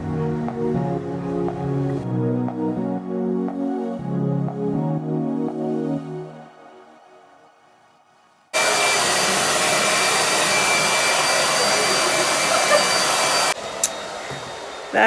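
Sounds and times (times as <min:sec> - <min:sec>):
hair dryer blowing: 0:08.6 - 0:15.0.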